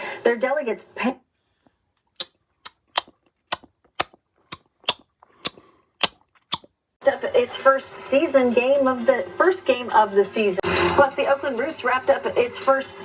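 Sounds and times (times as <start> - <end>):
person clicking tongue: 2.2 - 6.7.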